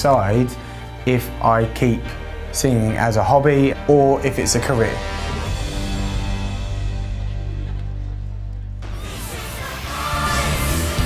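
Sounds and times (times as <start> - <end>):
background music with held chords: 0.0 - 11.0
low bass pulse: 3.4 - 11.0.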